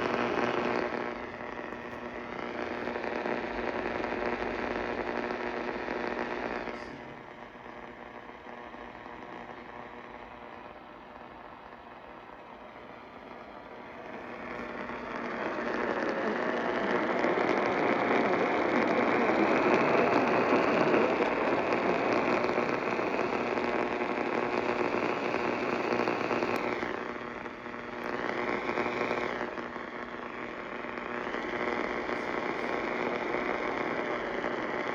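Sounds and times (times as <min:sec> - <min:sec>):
radio hiss with crackle: 0:00.0 - 0:34.9.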